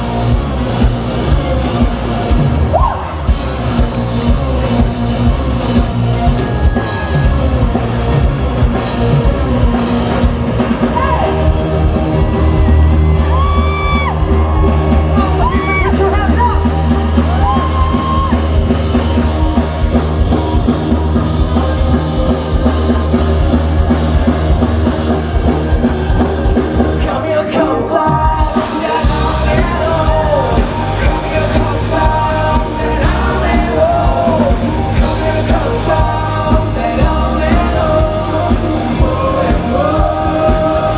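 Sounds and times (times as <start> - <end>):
person singing lead vocal: 0.0 - 40.9
rock band playing: 0.0 - 40.9.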